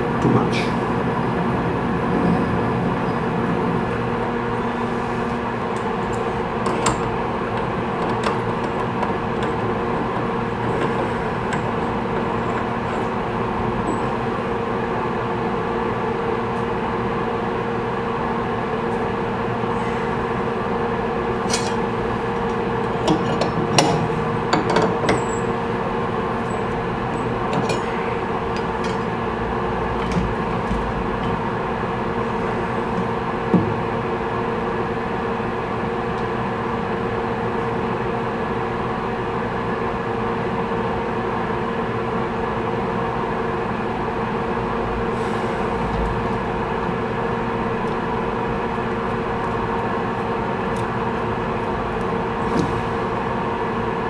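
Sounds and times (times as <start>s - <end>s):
machine tool humming: 18.5s - 36.3s.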